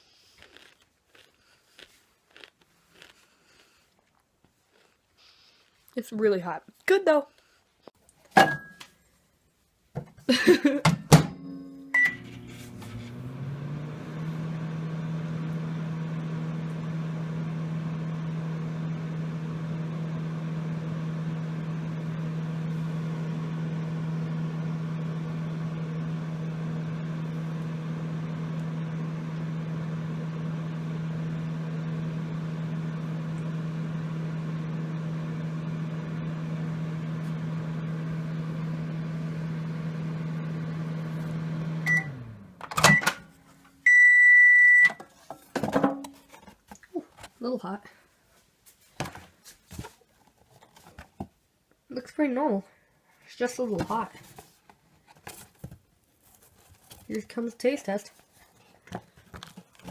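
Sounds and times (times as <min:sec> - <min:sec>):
microwave oven humming: 0:10.3 - 0:45.0.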